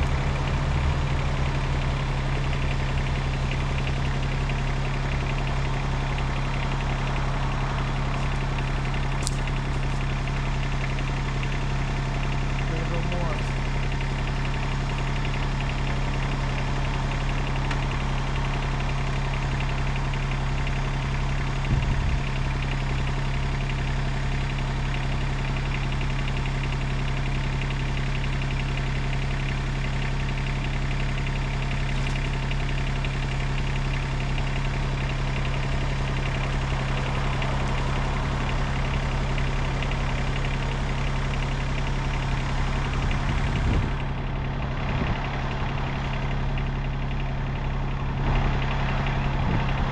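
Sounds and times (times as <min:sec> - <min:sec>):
tractor engine running: 0:00.0 - 0:49.9.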